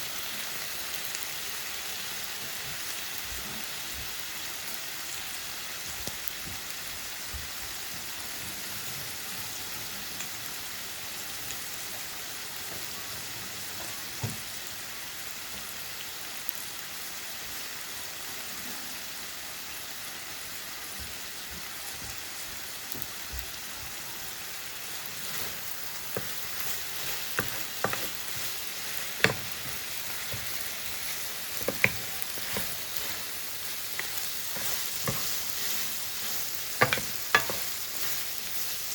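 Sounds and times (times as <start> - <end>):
noodles sizzling: 0.0 - 38.9
utensil clicking and scraping: 25.2 - 38.6.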